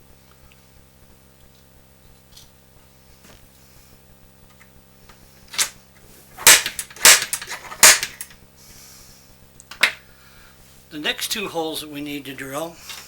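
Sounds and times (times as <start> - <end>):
hammer striking a punch: 6.4 - 8.2.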